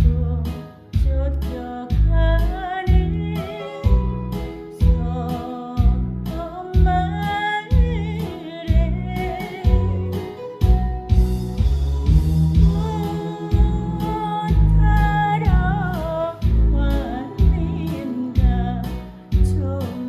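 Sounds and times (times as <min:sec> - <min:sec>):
person singing with vibrato: 0:00.0 - 0:10.5, 0:12.6 - 0:20.0
backing band with heavy bass: 0:08.7 - 0:19.8.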